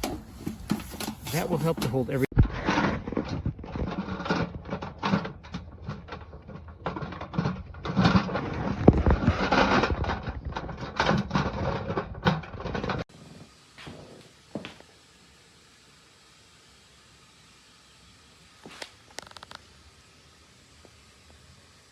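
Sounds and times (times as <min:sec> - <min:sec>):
rustling: 0:00.0 - 0:04.9.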